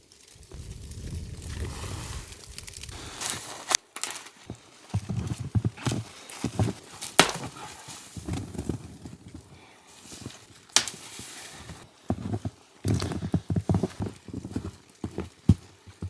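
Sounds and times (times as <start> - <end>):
sharp cracks: 0.2 - 4.3, 7.0 - 7.7
footsteps crunching in snow: 0.4 - 16.0.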